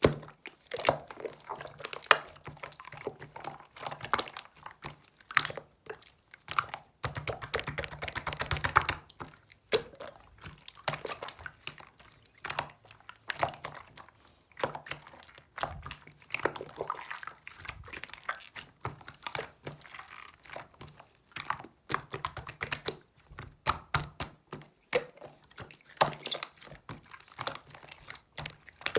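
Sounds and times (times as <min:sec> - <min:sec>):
chewing with mouth clicks: 0:09.1 - 0:20.8, 0:26.0 - 0:28.9.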